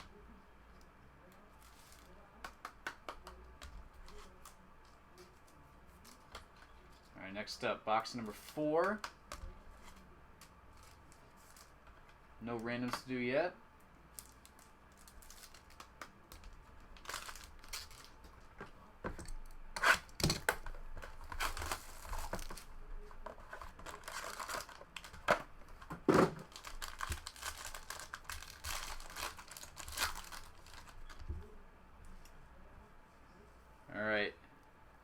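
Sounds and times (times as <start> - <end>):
plastic wrapping tearing and crinkling: 14.0 - 18.4, 19.8 - 31.3.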